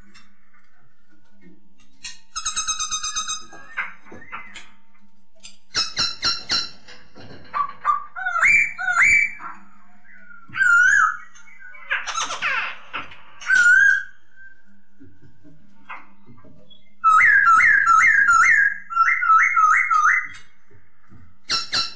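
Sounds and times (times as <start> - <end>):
bird singing whistles: 10.0 - 11.9, 13.4 - 14.8, 16.7 - 20.4.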